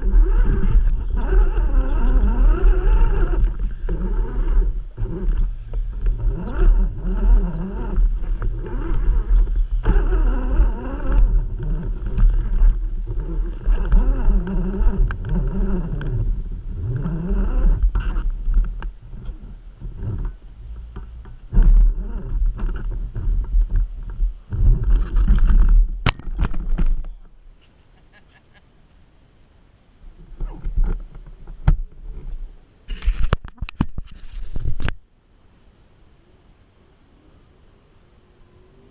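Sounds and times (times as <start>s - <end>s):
electric motor whining: 0.0s - 25.7s
chassis rumbling: 0.0s - 27.5s.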